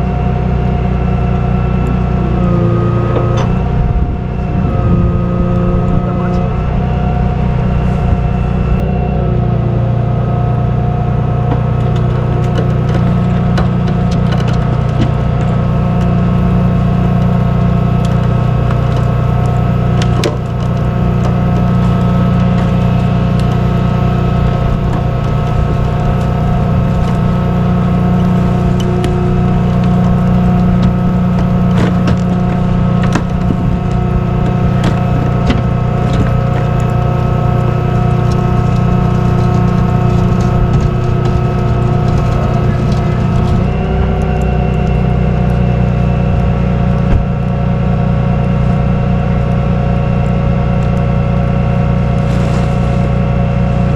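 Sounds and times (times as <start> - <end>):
truck engine humming: 0.0 - 53.9
sharp clicks and knocks: 11.4 - 47.6.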